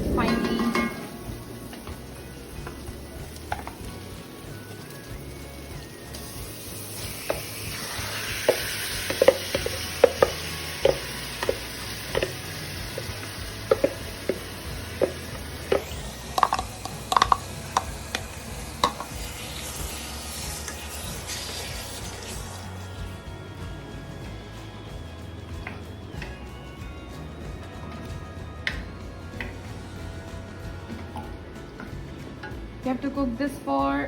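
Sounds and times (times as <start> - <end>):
chicken sizzling in hot oil: 0.0 - 26.4
spoon knocking against pot: 8.4 - 18.2.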